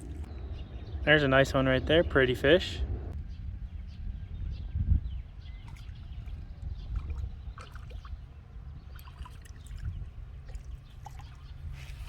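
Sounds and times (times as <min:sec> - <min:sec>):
low steady rumble: 0:00.0 - 0:09.0
pond water splashing and trickling: 0:05.6 - 0:12.0.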